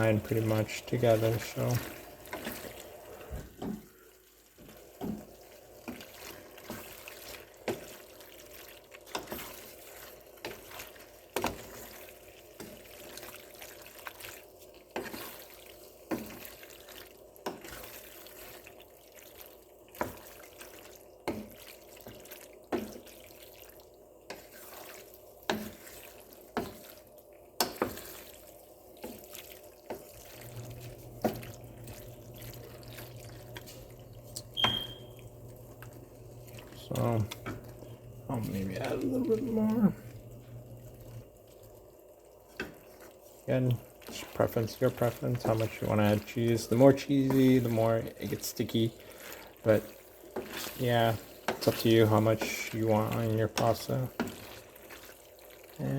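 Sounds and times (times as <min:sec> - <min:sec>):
pasta being stirred in a pot: 0:00.0 - 0:55.9
faint steady hum: 0:30.4 - 0:42.4.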